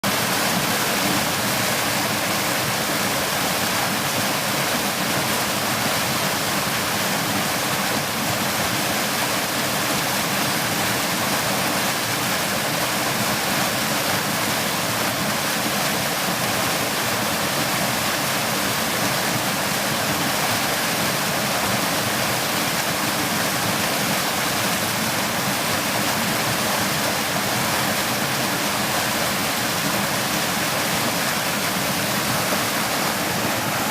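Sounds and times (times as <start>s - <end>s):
water rushing over rocks: 0.0s - 33.9s.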